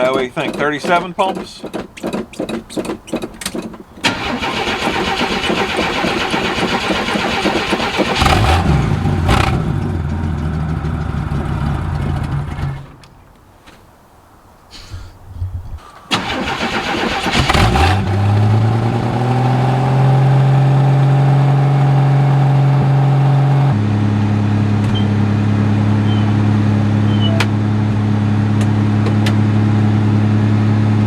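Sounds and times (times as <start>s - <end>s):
engine cranking and revving: 0.0s - 13.1s, 16.1s - 23.8s.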